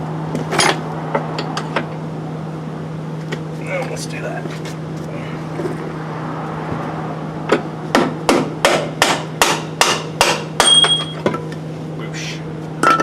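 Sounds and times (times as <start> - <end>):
hammer striking metal: 7.5 - 11.3.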